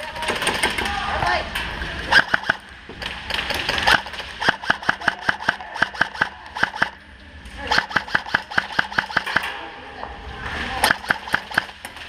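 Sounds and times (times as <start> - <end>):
airsoft gun shots: 2.1 - 2.6, 3.5 - 7.0, 7.7 - 9.5, 10.8 - 11.8.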